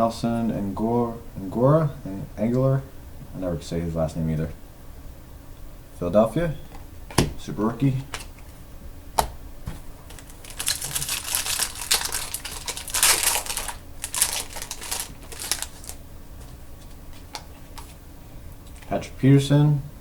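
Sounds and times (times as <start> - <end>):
cards rustling and clicking: 10.1 - 18.0.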